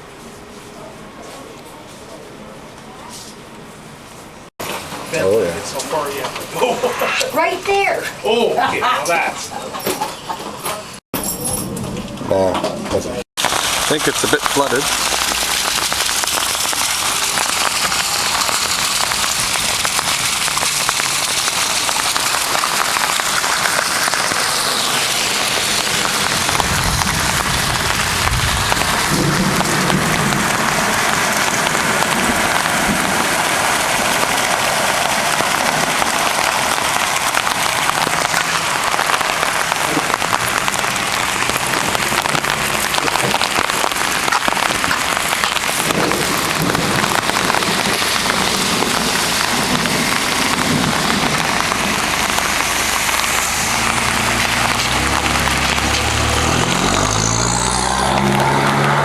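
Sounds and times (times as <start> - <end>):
heavy rain on umbrella: 4.6 - 6.8, 13.3 - 59.0
vehicle engine approaching: 11.5 - 45.2, 46.2 - 59.0.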